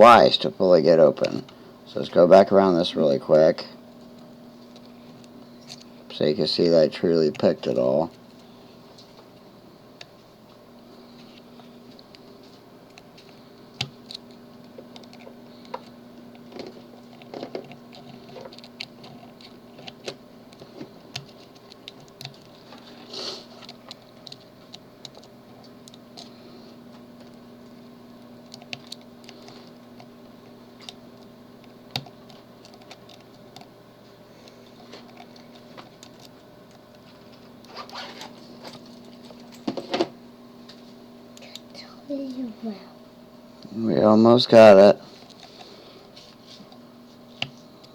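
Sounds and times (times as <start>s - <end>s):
faint steady hum: 0.0s - 47.9s
lock pick clicking and scratching: 31.9s - 33.7s.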